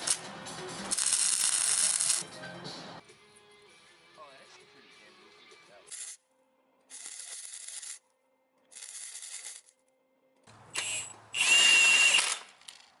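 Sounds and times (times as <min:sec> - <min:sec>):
power tool high whine: 0:10.8 - 0:12.4.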